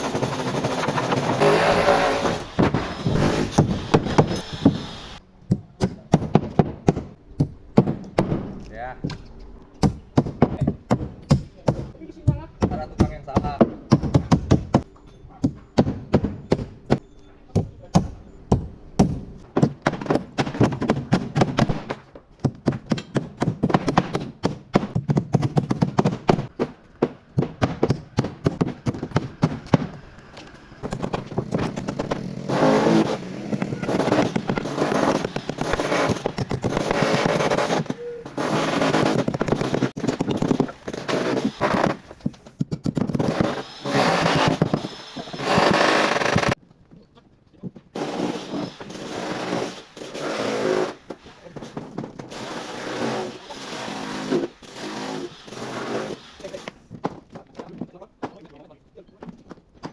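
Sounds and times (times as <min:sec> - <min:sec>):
continuous rasping scrape: 0:00.0 - 0:05.2, 0:28.2 - 0:46.6, 0:48.0 - 0:57.0.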